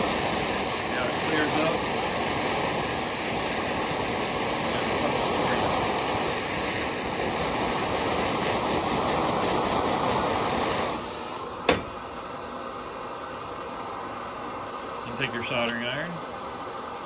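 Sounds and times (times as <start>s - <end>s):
heat gun blowing air: 0.0s - 13.0s
sharp knock: 11.7s - 11.9s.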